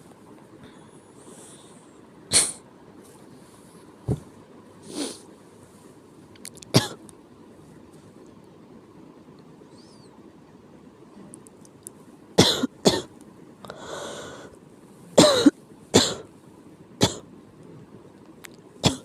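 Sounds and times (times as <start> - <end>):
person coughing: 6.8 - 7.0, 12.4 - 13.1, 15.2 - 16.3, 17.0 - 17.2
drawn-in breath: 13.7 - 14.5.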